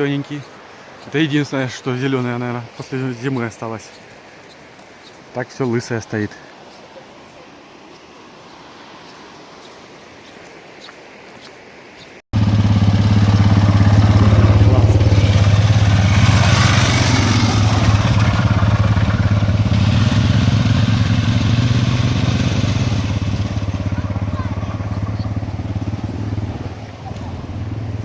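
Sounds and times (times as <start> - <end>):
road noise: 0.0 - 28.0
vehicle engine humming: 12.4 - 28.0.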